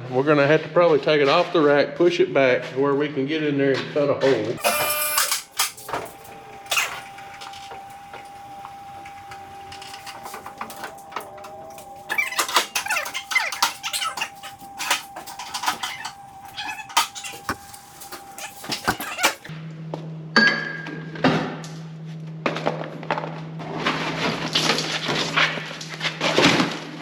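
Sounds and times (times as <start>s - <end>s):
squeaks clicks and knocks: 4.6s - 19.5s
vehicle lift whining: 4.6s - 19.5s.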